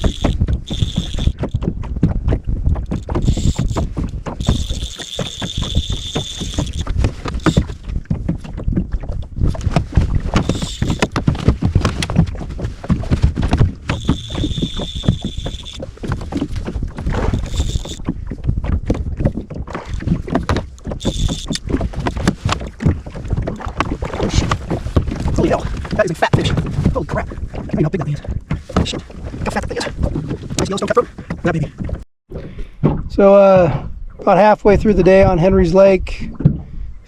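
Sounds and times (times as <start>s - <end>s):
high steady tone: 0.0s - 1.6s, 4.4s - 6.8s, 13.9s - 15.8s
water slapping boat hull: 0.0s - 34.4s
wind buffeting microphone: 0.0s - 37.0s.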